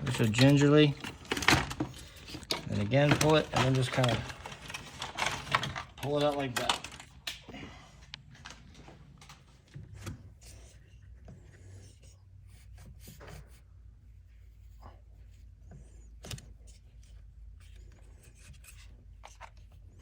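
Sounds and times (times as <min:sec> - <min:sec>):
plastic scraping and rubbing: 0:00.0 - 0:07.3
plastic clicks: 0:00.0 - 0:10.2.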